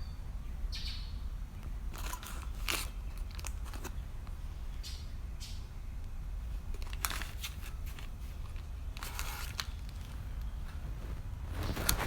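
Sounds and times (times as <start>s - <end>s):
steady low hum: 0.0s - 12.0s
handling crackles and rustles: 1.4s - 4.5s, 6.4s - 12.0s.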